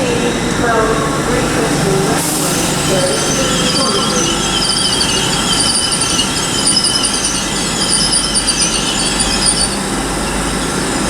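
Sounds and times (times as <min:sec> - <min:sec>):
train rolling rumble: 0:00.0 - 0:11.0
train wheels squealing: 0:02.8 - 0:11.0.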